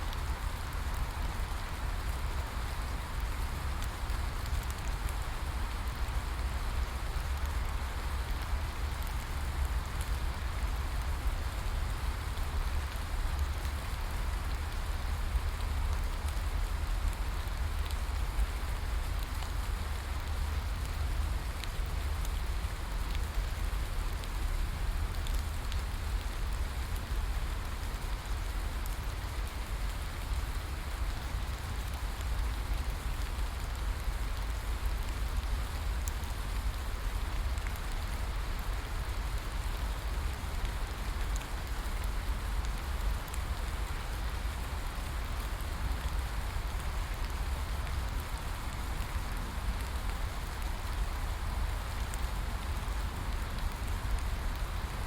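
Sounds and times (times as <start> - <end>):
raindrop ticks: 12.3 - 55.0.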